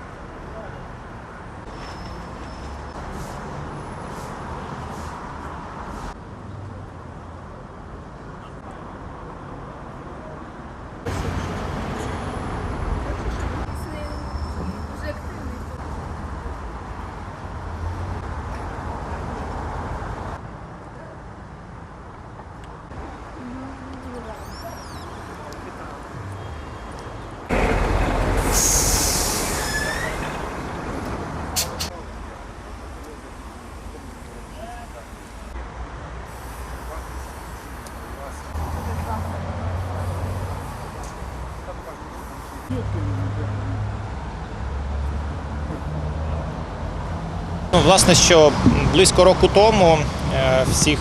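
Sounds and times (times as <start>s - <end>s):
city street traffic: 0.0s - 51.0s
brief high squeal: 1.7s - 3.0s, 14.0s - 15.0s, 28.4s - 30.4s
heavy vehicle passing: 22.9s - 32.0s, 32.6s - 51.0s.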